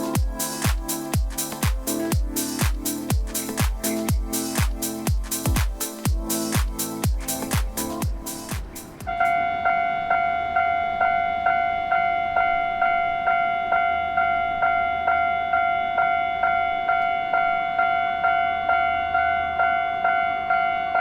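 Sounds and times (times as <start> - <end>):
electronic music with sweeps: 0.0 - 11.2
level crossing alarm bell: 9.1 - 21.0.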